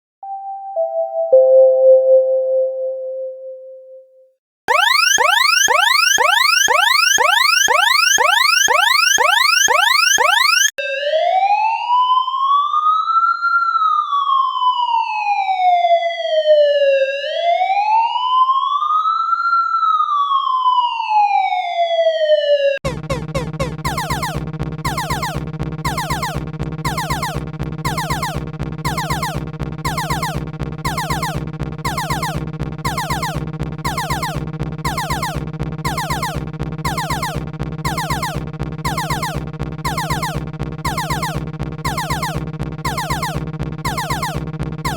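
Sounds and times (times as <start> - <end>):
pulsing electronic tone: 4.7 - 10.7, 22.8 - 44.9
electronic alert alarm: 4.7 - 10.8, 22.8 - 44.9
siren wailing: 4.7 - 15.7, 22.3 - 44.9.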